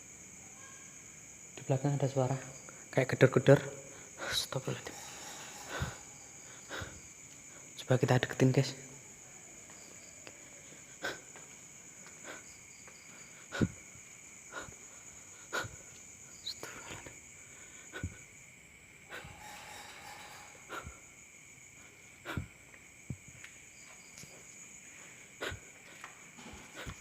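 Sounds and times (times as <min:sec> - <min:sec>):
crickets chirring: 0:00.0 - 0:27.0
slow footsteps: 0:09.6 - 0:14.9, 0:21.7 - 0:27.0.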